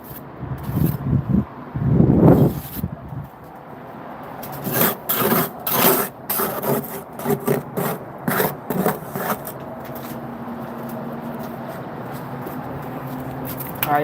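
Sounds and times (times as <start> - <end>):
trowel scraping mortar: 0.0 - 1.0, 4.4 - 10.2.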